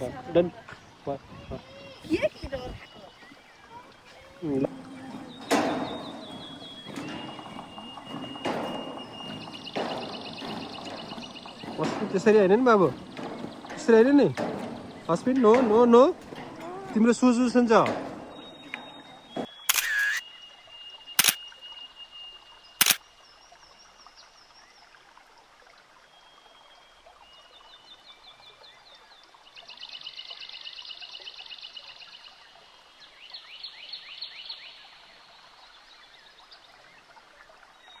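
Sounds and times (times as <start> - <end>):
sharp clicks: 8.4 - 20.2.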